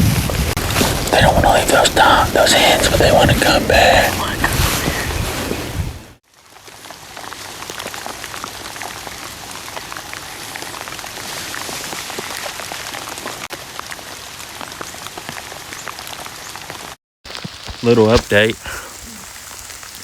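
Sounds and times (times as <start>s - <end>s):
rain falling: 0.0s - 20.0s
raindrops hitting close by: 0.0s - 20.0s.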